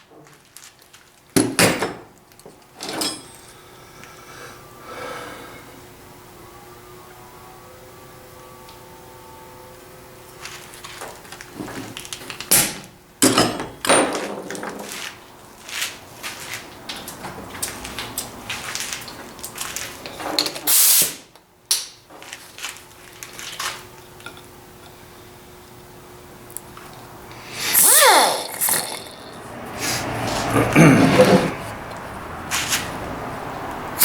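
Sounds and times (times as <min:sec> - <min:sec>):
hand tool scraping and rubbing: 0:27.4 - 0:31.8, 0:32.5 - 0:33.0.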